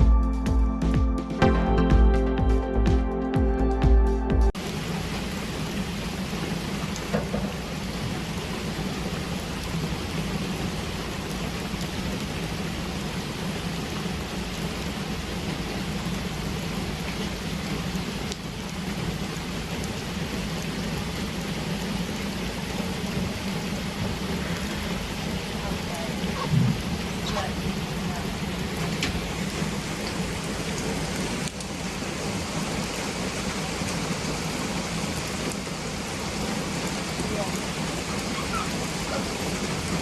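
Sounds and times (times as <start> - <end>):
wind and water hiss: 4.6 - 40.0
boat motor humming: 24.0 - 28.6.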